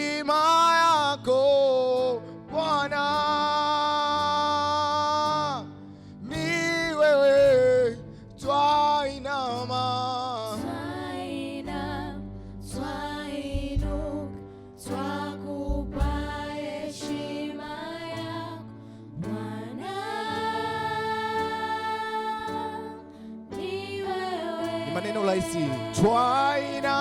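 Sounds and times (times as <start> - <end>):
voices singing: 10.4 - 18.6, 19.2 - 27.0
instrumental chords and bass: 12.3 - 14.4, 15.6 - 16.6.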